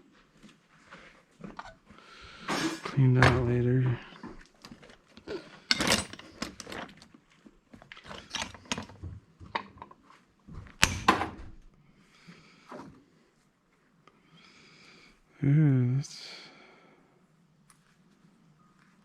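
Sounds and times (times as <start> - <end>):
tools and metal parts clinking: 5.6 - 7.0, 8.0 - 10.0.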